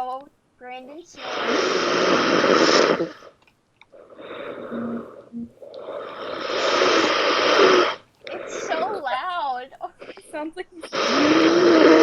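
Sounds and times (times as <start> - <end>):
heavy snoring: 1.2 - 3.3, 5.8 - 8.9, 10.9 - 12.0
soft breath: 3.9 - 7.6.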